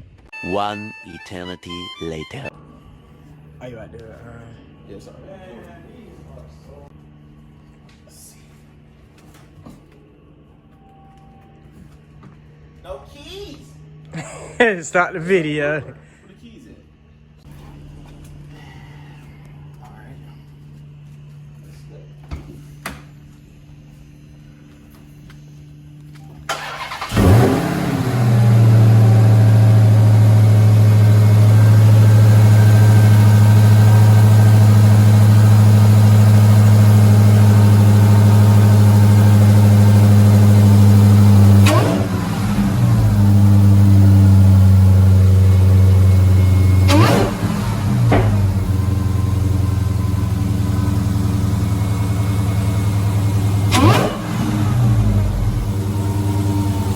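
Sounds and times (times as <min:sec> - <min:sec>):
car engine starting and idling: 0:26.5 - 0:56.9
engine revving: 0:26.5 - 0:56.9.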